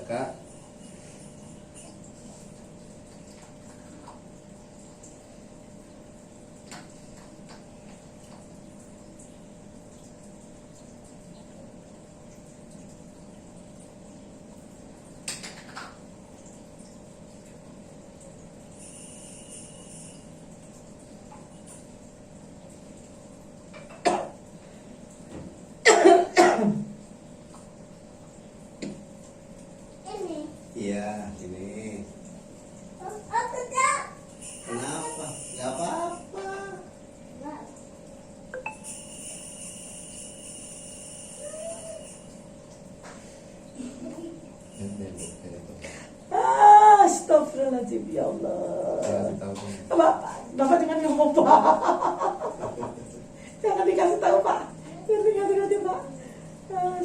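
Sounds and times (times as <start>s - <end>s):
faint hum: 0.0s - 57.0s
person coughing: 24.0s - 24.4s, 25.8s - 26.8s.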